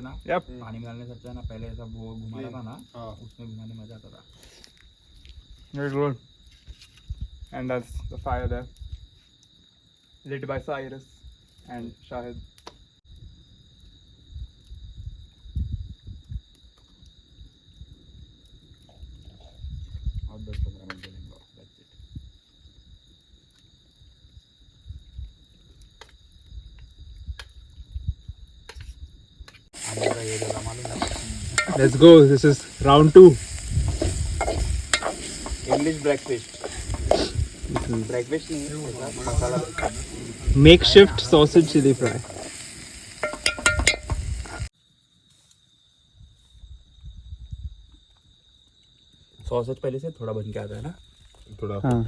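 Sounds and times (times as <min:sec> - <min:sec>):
sausages sizzling in a frying pan: 0:00.0 - 0:09.3, 0:29.7 - 0:44.7
crickets trilling: 0:00.0 - 0:52.0
stirring clicks against pan: 0:43.2 - 0:44.6.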